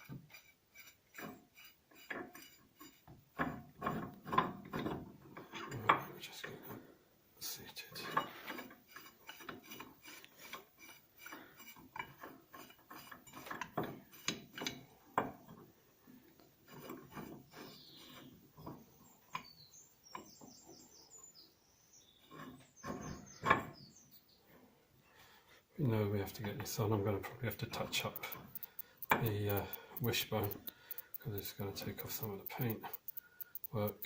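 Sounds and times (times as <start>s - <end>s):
metallic clicks and scrapes of tools: 0.0s - 6.6s, 8.0s - 14.8s, 28.0s - 34.0s.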